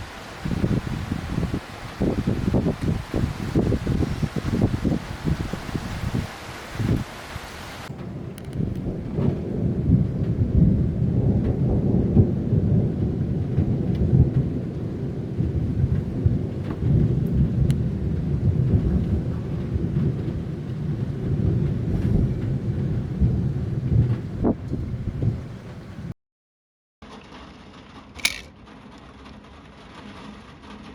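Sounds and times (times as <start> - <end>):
distant thunder rumbling: 0.0 - 6.2, 7.8 - 26.1.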